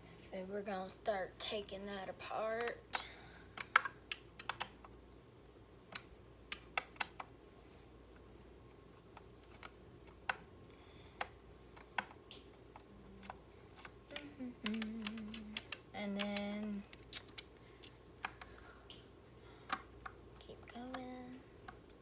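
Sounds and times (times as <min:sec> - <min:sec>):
plastic parts clicking and tapping: 0:02.6 - 0:05.0, 0:05.9 - 0:07.3, 0:09.0 - 0:19.0, 0:19.6 - 0:22.0.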